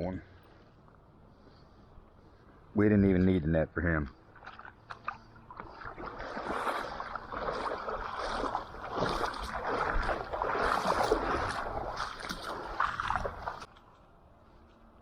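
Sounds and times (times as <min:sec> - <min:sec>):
water sloshing and splashing: 0:04.1 - 0:13.7.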